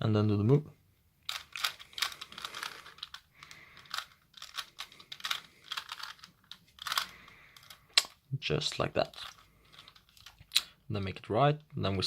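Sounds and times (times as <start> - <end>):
puzzle cube layers clicking: 1.2 - 8.2.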